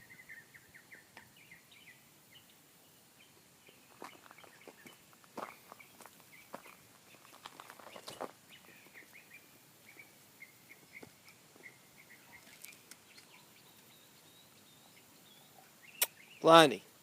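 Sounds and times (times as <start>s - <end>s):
small bird chirping: 0.0s - 16.6s.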